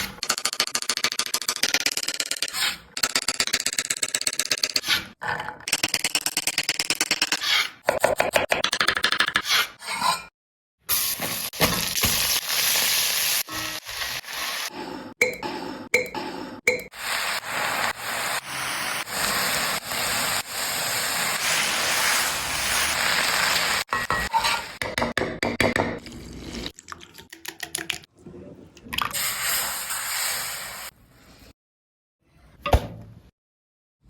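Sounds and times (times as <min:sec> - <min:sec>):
food sizzling in hot oil: 0:10.9 - 0:14.7, 0:17.0 - 0:23.9.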